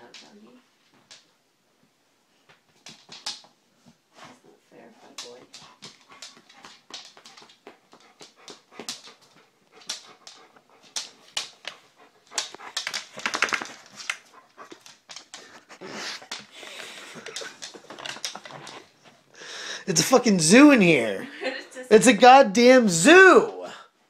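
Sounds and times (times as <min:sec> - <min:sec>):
dog panting and sniffing: 0:03.8 - 0:19.4.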